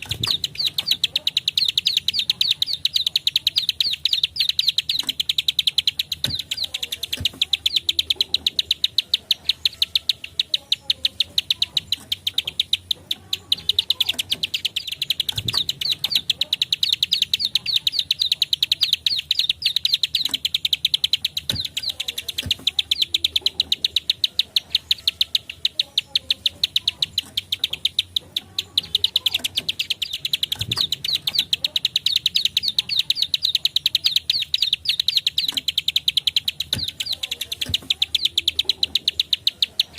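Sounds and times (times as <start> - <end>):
bird calling in rapid clicks: 0.0 - 39.9.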